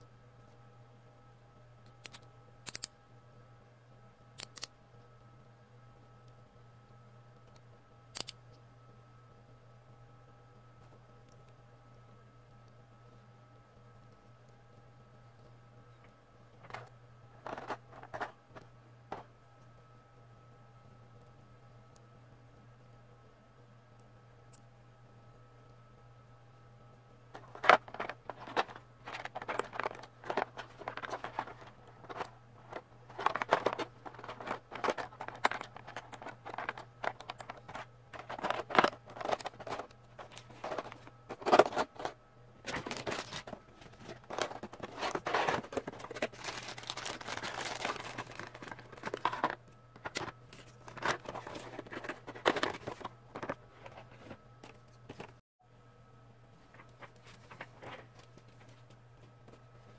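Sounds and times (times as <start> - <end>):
steady low hum: 0.0 - 59.9
packaging crinkling and tearing: 27.4 - 42.1, 42.7 - 53.6.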